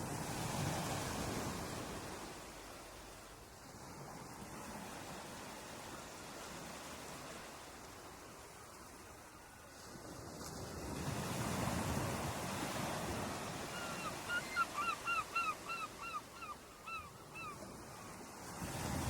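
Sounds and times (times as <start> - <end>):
ocean waves washing onto shore: 0.0 - 19.0
bird calls: 13.7 - 17.6.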